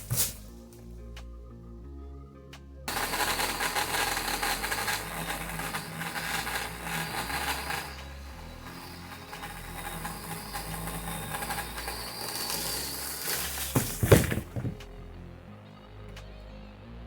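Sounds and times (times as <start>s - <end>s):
chainsaw running: 2.9s - 14.8s.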